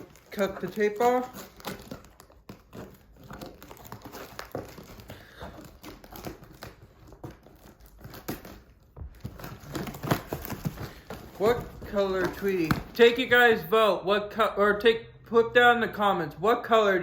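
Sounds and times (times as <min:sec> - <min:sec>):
packing tape being cut: 0:00.0 - 0:13.0
wrapping crinkling and tearing: 0:00.0 - 0:13.7.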